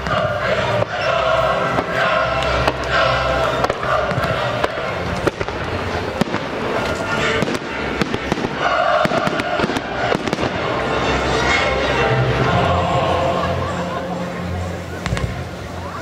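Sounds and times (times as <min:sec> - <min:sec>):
fireworks bursting: 0:00.0 - 0:11.4, 0:15.0 - 0:15.6
fireworks display music: 0:00.0 - 0:16.0.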